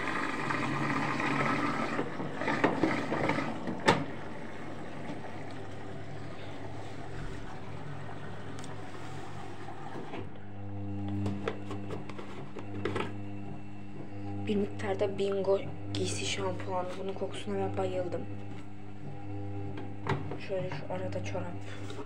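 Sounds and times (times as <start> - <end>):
washing machine running: 0.0 - 22.0.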